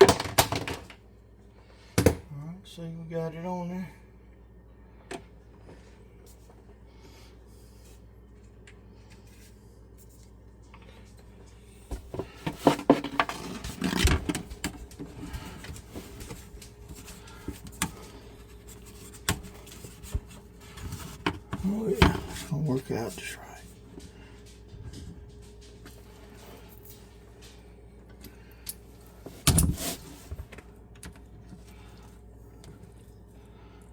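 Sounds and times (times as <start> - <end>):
low steady hum: 0.0 - 33.9
pipes and tools clattering: 11.9 - 23.3.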